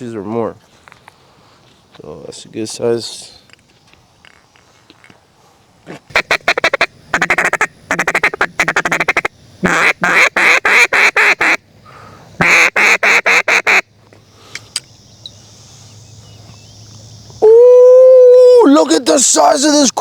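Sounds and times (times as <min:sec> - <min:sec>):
duck call quacks: 0:06.1 - 0:11.6, 0:12.4 - 0:13.8.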